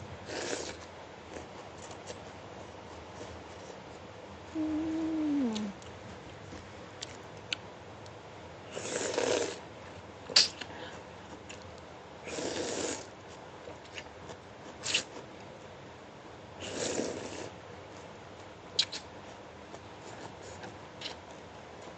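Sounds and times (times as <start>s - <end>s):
noodles being slurped: 0.2s - 0.9s, 8.7s - 9.6s, 12.3s - 13.1s, 14.8s - 15.2s, 16.6s - 17.6s.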